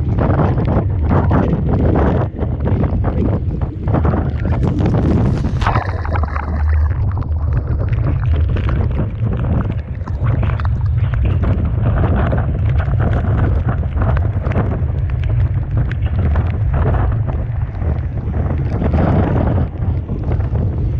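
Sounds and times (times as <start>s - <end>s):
wind buffeting microphone: 0.0s - 20.9s
rough sea and spray hissing: 2.2s - 15.5s.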